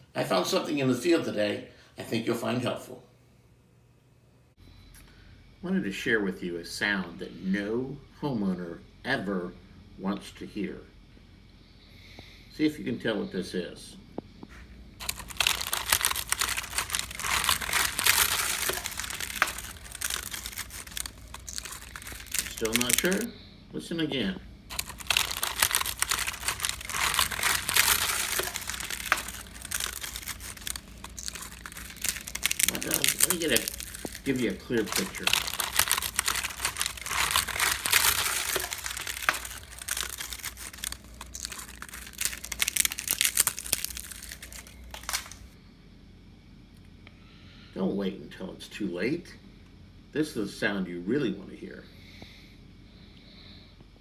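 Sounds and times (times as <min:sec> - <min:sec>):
termites chewing wood: 0:15.0 - 0:23.3, 0:24.7 - 0:45.6
wood crackling and crunching: 0:15.0 - 0:23.3, 0:24.7 - 0:45.6.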